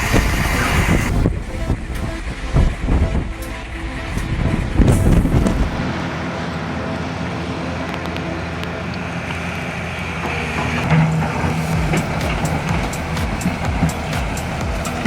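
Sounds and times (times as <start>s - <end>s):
loud low thumps: 0.0s - 6.0s, 11.3s - 15.0s
heavy vehicle engine running: 0.0s - 15.0s.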